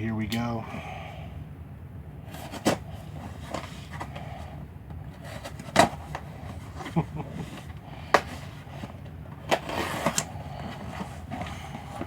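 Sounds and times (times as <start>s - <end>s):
low steady hum: 0.0s - 12.0s
packaging being opened by hand: 5.1s - 12.0s.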